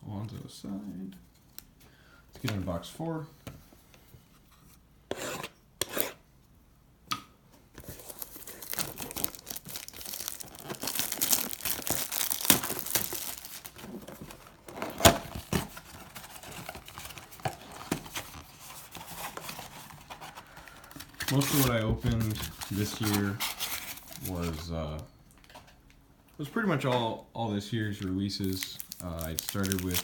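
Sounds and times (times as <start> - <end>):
packaging crinkling and tearing: 7.8 - 24.6, 28.0 - 30.0.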